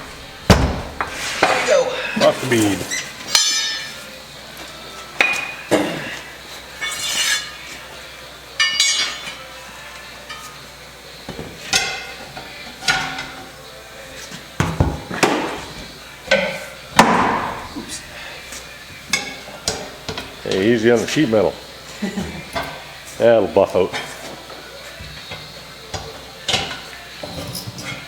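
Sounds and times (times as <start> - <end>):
tire tools clanking on steel rim: 14.7 - 21.3.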